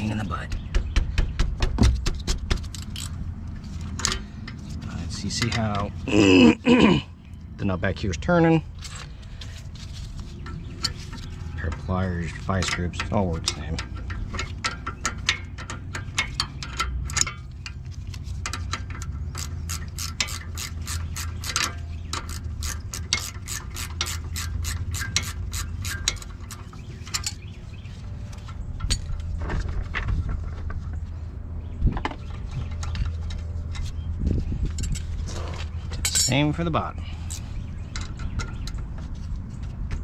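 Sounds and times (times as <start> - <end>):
hand ratchet clicking: 18.4 - 27.4.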